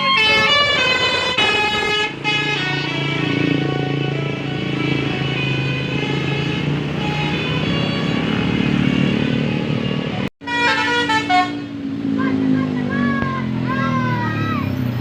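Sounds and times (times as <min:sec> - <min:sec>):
melodic bus horn: 0:00.0 - 0:11.8
bus engine running: 0:00.0 - 0:15.0.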